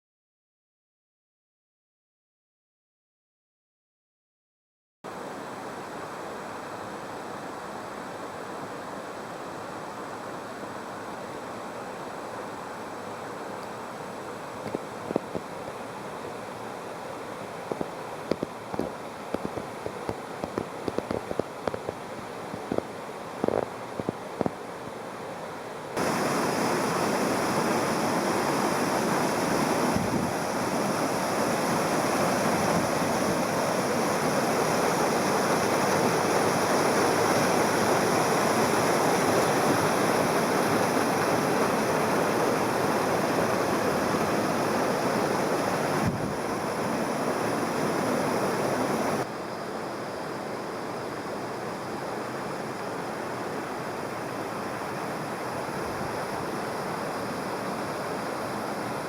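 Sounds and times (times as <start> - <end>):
waterfall rushing: 26.0 - 49.6.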